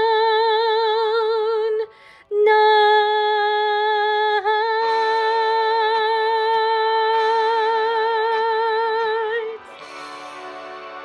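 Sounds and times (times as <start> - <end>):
backing music: 4.8 - 11.0.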